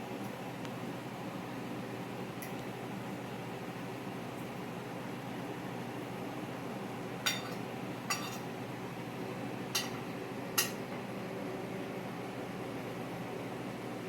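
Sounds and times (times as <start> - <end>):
steady room hum: 0.0 - 14.0
tableware clinking: 7.3 - 8.5, 9.8 - 10.0, 10.6 - 10.8.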